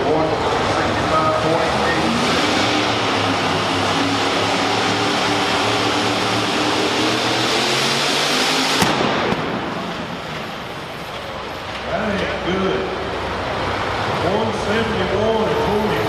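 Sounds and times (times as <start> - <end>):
announcer speaking: 0.0 - 2.4, 11.8 - 13.1, 14.2 - 16.0
tractor engine at full power: 0.0 - 16.0
sharp bang: 8.8 - 10.5.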